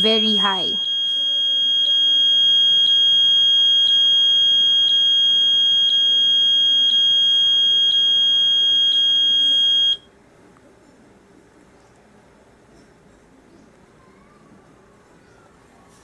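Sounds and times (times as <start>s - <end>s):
high-pitched alarm buzzer: 0.0s - 10.0s.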